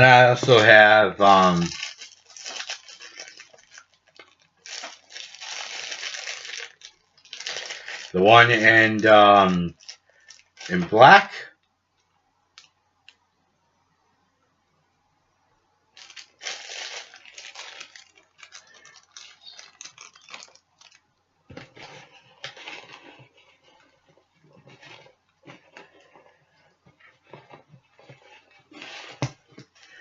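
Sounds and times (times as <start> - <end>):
plastic wrapping crinkling and tearing: 0.0 - 11.0, 16.0 - 21.1, 21.7 - 26.2.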